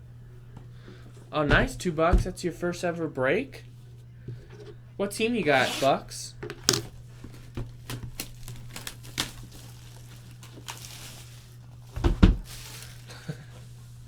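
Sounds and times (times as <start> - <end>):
packaging crinkling: 5.4 - 13.5.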